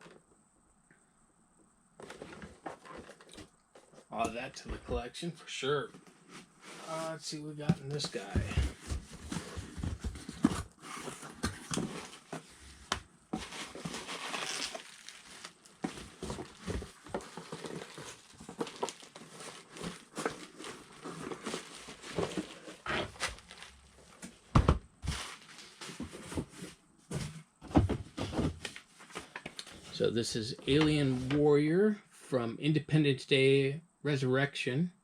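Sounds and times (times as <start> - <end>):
cardboard and plastic crinkling: 2.0 - 4.0, 6.2 - 30.0.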